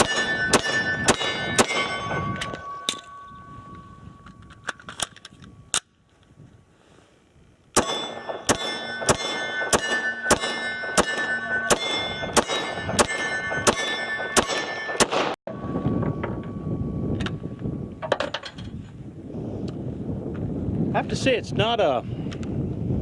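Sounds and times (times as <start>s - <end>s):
pistol shots: 0.0s - 2.5s, 7.8s - 15.4s
metallic ringing: 0.0s - 5.7s, 7.8s - 18.8s.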